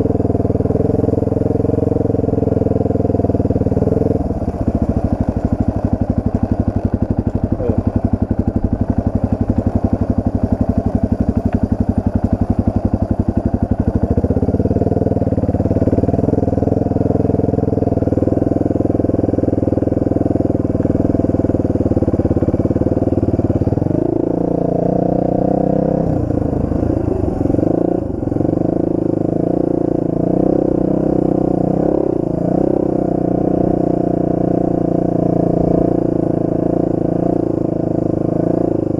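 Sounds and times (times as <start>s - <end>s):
dirt bike engine: 0.0s - 38.9s.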